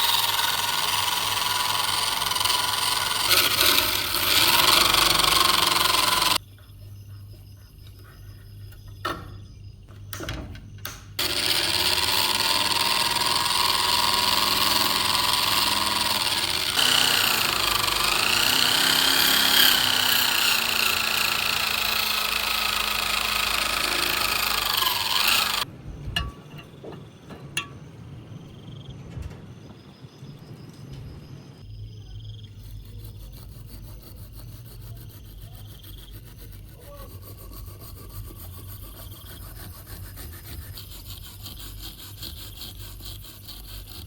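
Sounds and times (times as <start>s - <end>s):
power tool whining: 0.0s - 6.4s, 11.2s - 25.7s.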